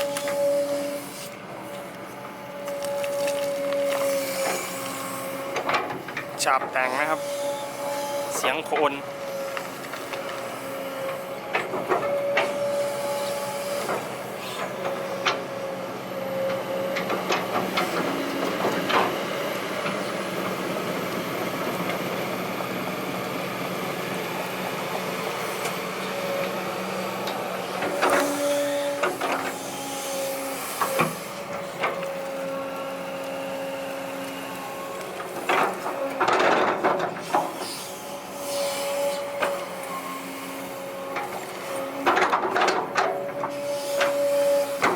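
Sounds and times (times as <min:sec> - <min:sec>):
excavator bucket scraping soil: 0:00.0 - 0:15.6, 0:27.3 - 0:44.9
hydraulic whine: 0:00.0 - 0:44.9.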